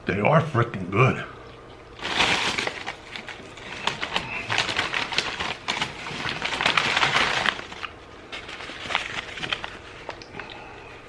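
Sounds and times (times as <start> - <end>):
paper packaging rustling: 2.0 - 10.5.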